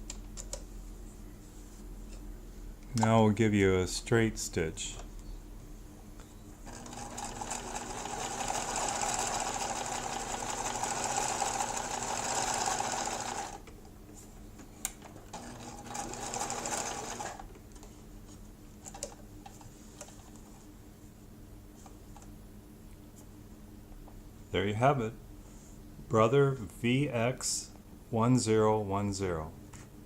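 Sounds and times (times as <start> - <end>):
sewing machine running: 6.7 - 13.6, 15.3 - 17.5.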